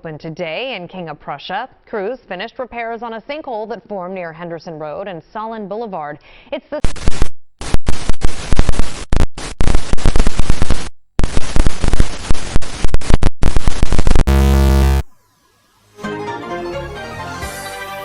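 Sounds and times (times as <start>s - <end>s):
glitching static bursts: 6.8s - 16.0s
loud buzzing tone: 7.0s - 16.0s.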